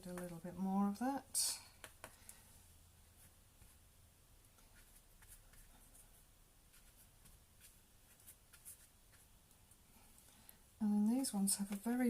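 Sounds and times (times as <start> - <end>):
paintbrush scratching on canvas: 6.7 - 9.3.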